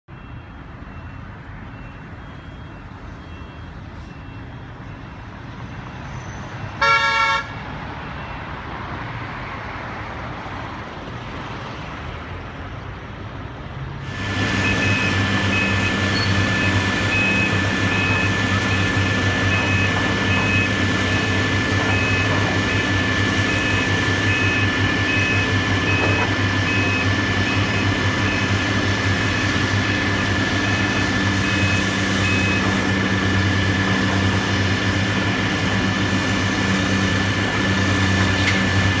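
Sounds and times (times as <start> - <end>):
street traffic: 0.0 - 39.0
engine running nearby: 0.1 - 39.0
vehicle horn honking: 6.8 - 7.6.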